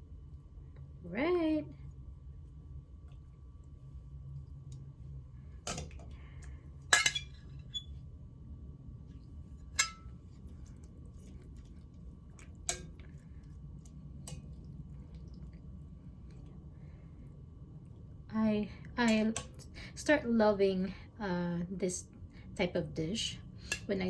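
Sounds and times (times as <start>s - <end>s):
steady low hum: 0.0s - 24.0s
utensils clinking against dishes: 6.9s - 7.8s.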